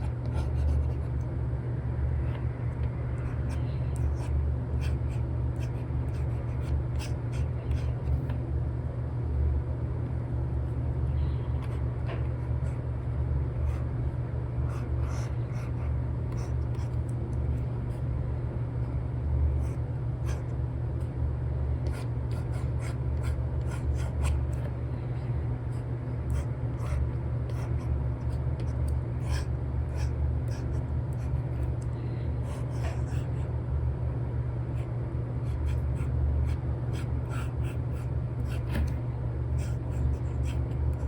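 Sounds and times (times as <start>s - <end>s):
stylus scratching and tapping screen: 0.0s - 1.3s, 2.2s - 8.4s, 11.5s - 18.1s, 21.8s - 24.7s, 25.7s - 31.9s, 35.5s - 39.0s
steady low hum: 0.0s - 41.0s.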